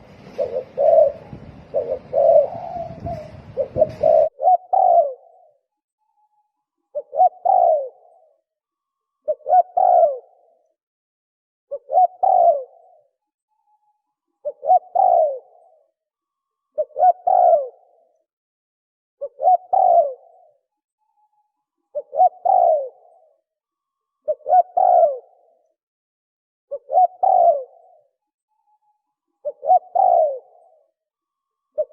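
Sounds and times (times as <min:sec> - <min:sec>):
dove cooing: 0:00.0 - 0:05.6, 0:06.9 - 0:08.4, 0:09.2 - 0:10.6, 0:11.7 - 0:13.1, 0:14.4 - 0:15.8, 0:16.8 - 0:18.1, 0:19.2 - 0:20.6, 0:21.9 - 0:23.4, 0:24.2 - 0:25.6, 0:26.7 - 0:28.1, 0:29.4 - 0:30.9.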